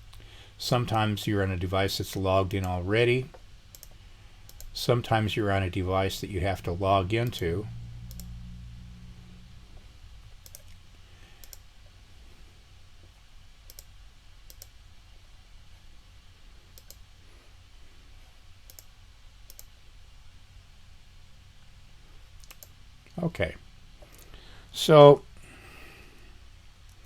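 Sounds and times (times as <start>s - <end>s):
faint low hum: 0.0s - 27.0s
computer mouse clicking: 2.6s - 4.7s, 8.1s - 8.4s, 10.4s - 10.8s, 11.4s - 11.7s, 13.7s - 13.9s, 14.5s - 14.8s, 16.8s - 17.0s, 18.7s - 18.9s, 19.5s - 19.7s, 22.4s - 22.8s.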